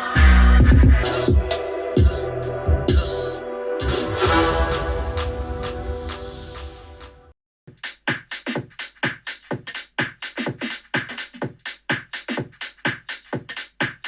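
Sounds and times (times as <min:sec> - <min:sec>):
electronic dance music: 0:00.0 - 0:07.2.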